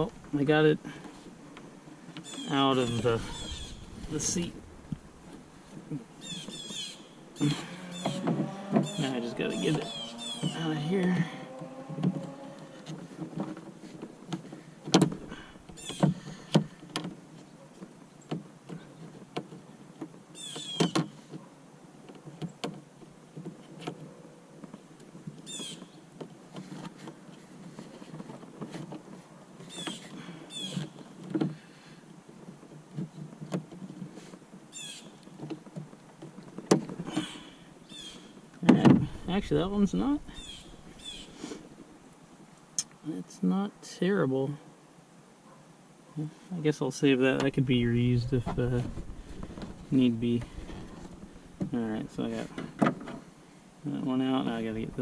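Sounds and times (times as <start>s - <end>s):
plastic rivet squeaking: 1.5s - 17.2s, 37.9s - 41.8s.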